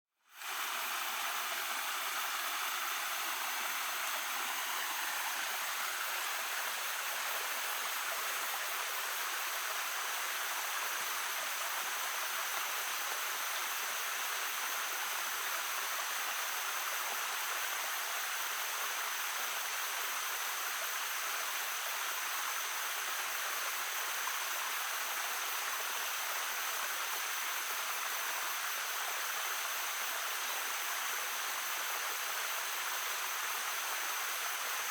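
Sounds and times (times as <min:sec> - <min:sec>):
small stream babbling: 0:00.2 - 0:34.9.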